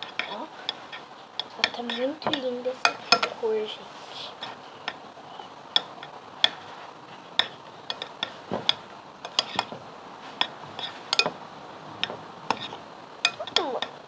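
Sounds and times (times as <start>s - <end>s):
thick slime being stirred: 12.1s - 13.4s.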